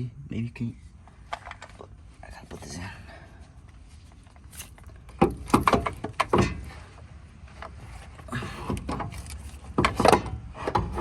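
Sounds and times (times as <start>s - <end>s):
metal rattling: 4.0s - 6.8s
metal knocks and clunks: 4.6s - 6.8s, 8.5s - 11.0s.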